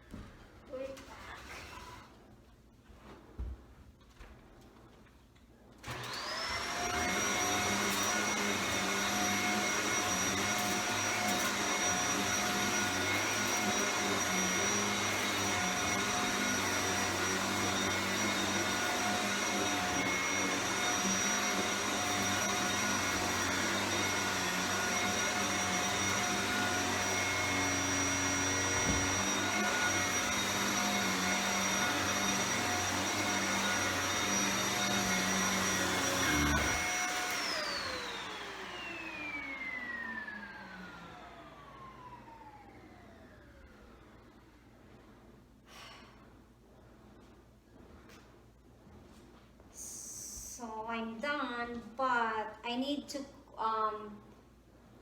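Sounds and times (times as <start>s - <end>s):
vacuum cleaner motor whine: 5.8s - 44.7s.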